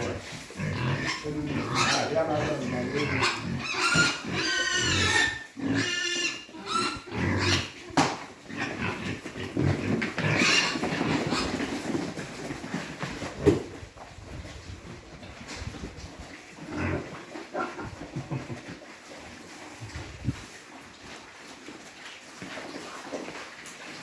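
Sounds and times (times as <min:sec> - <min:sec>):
pigs squealing and grunting: 0:00.0 - 0:12.0, 0:16.2 - 0:20.4.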